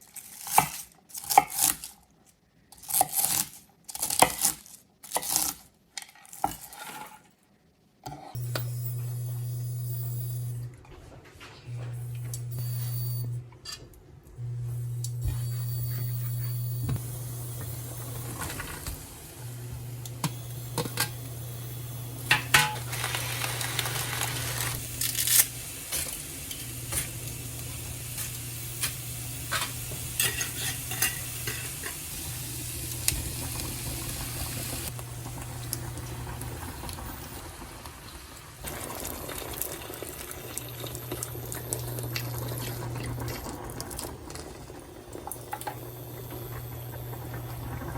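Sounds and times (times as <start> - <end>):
low hum: 8.4 - 24.9
food sizzling in a pan: 15.2 - 43.8.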